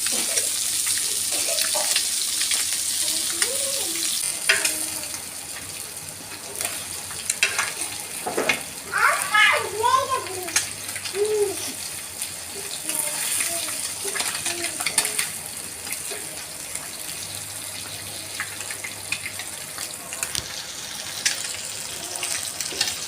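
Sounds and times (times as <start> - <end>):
fish sizzling in hot oil: 0.0 - 23.0
oil crackling and popping: 0.0 - 23.0.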